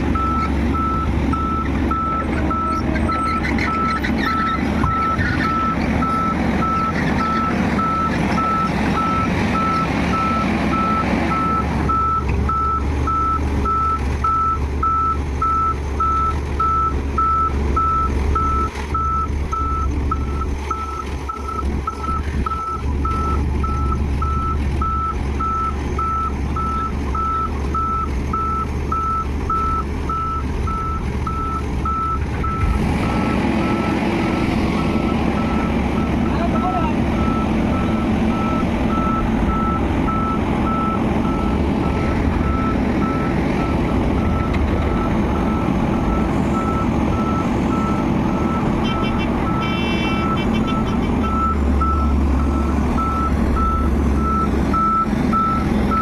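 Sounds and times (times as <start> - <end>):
diesel engine running: 0.0 - 56.0
reversing alarm beeping: 0.2 - 4.0, 4.8 - 34.0, 34.8 - 56.0.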